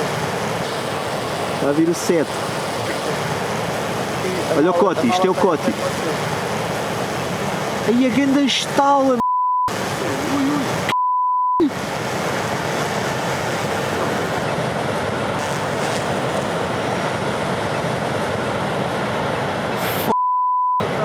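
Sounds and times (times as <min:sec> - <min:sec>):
breaking surf roar: 0:00.0 - 0:10.9, 0:11.6 - 0:20.1
short bleep tone: 0:20.1 - 0:20.8.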